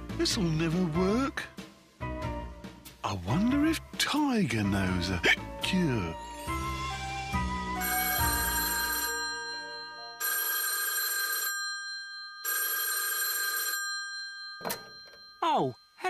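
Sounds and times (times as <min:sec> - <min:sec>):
cartoon music: 0:04.7 - 0:10.2
electric bell ringing: 0:07.8 - 0:16.0.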